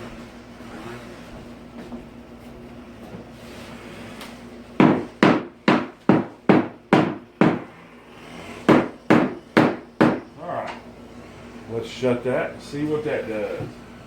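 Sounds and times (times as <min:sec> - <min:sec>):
hammer striking wood: 0:04.8 - 0:07.8, 0:08.7 - 0:10.3.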